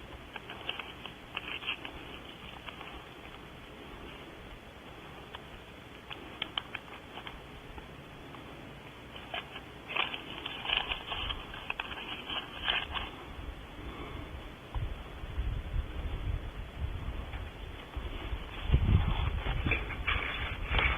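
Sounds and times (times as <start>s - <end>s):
scratchy rubbing on camera lens: 0.3s - 3.4s, 9.1s - 13.3s, 18.0s - 20.9s.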